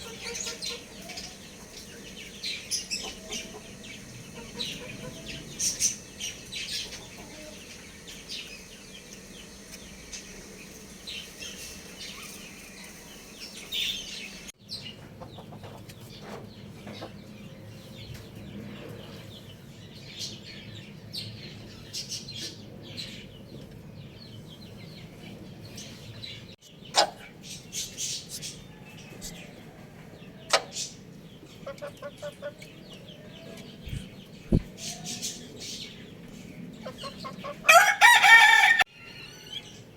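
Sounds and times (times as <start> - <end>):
chickens clucking: 0.0 - 19.5, 26.8 - 39.9
chicks chirping: 0.0 - 39.9.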